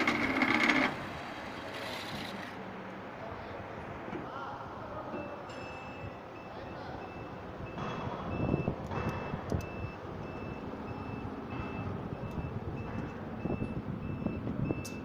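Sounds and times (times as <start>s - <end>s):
workshop machinery noise: 0.0s - 2.8s
clunks and knocks: 11.4s - 13.2s.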